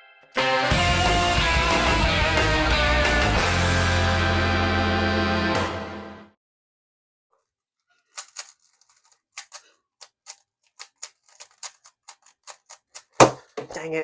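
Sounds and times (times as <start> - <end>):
puzzle cube plastic clicks: 8.1 - 13.2.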